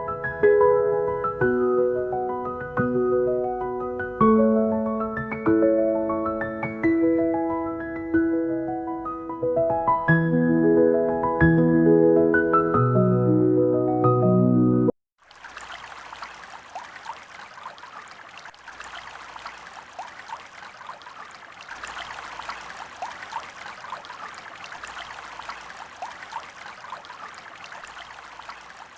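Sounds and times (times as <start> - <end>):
small liquid plinks: 15.2 - 28.9
water trickling and bubbling: 15.2 - 28.9.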